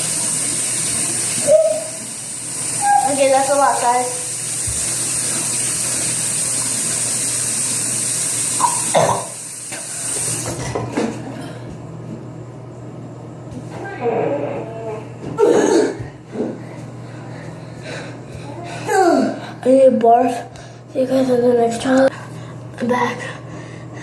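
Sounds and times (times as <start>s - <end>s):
water running from a tap: 0.0s - 10.8s.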